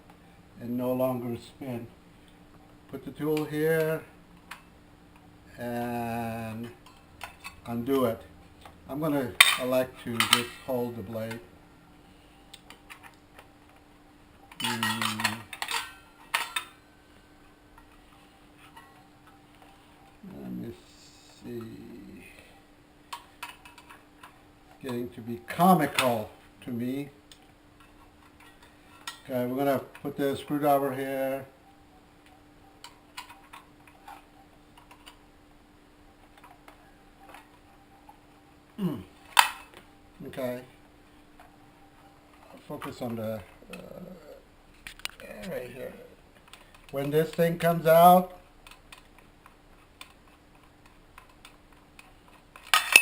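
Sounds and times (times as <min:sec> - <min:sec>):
faint steady hum: 0:00.0 - 0:53.0
metal wrench clinking and scraping: 0:09.4 - 0:10.8, 0:14.6 - 0:16.8, 0:52.6 - 0:53.0.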